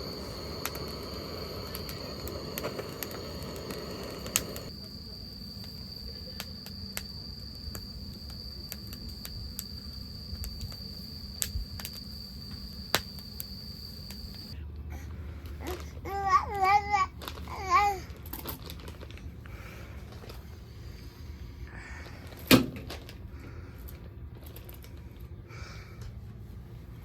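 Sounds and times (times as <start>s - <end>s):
cricket trilling: 0.0s - 14.6s
low background rumble: 0.0s - 27.0s.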